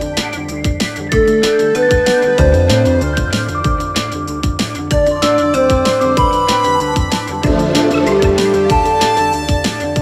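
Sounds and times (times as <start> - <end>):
steady drum beat: 0.0 - 10.0
electronic melody: 1.2 - 4.4, 5.0 - 9.6.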